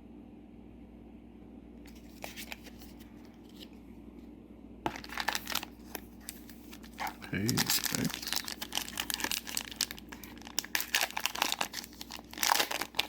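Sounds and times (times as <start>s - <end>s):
cards rustling: 1.9s - 3.8s, 4.9s - 13.0s
foil wrapper crinkling: 4.9s - 13.0s.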